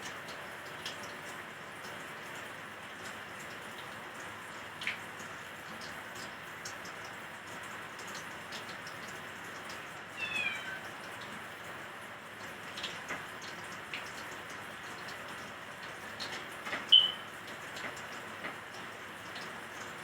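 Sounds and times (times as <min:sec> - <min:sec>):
food frying in a pan: 0:00.0 - 0:20.0
cat meowing: 0:10.2 - 0:10.9.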